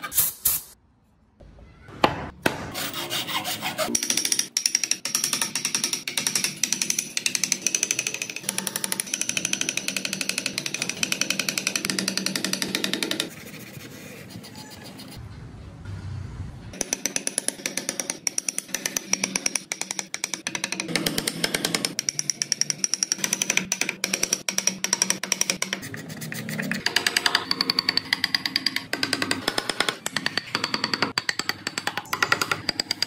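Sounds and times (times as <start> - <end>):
carving tool tapping wood: 16.8 - 26.0, 26.7 - 33.0.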